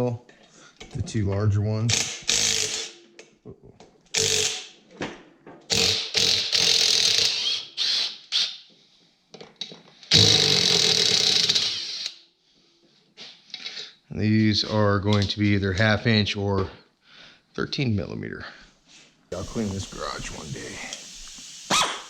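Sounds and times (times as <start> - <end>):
impact wrench spinning: 1.9 - 3.0, 4.2 - 4.8, 5.7 - 8.6, 10.1 - 12.2.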